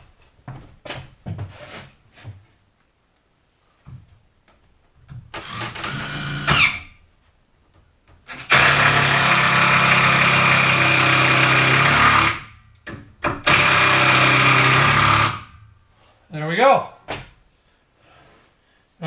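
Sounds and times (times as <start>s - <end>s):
power drill driving a screw: 5.4s - 6.9s, 8.3s - 12.4s, 13.4s - 15.5s.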